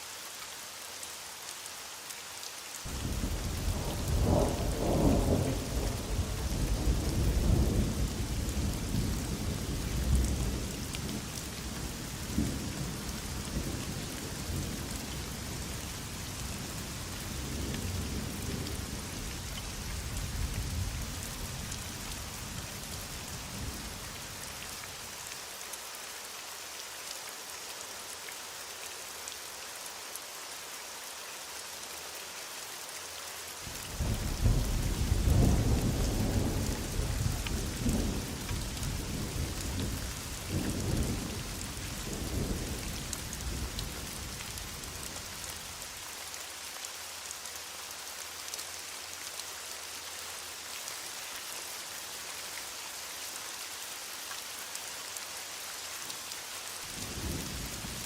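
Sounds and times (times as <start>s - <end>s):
heavy rain falling: 0.0s - 58.0s
distant thunder rumbling: 2.9s - 10.6s.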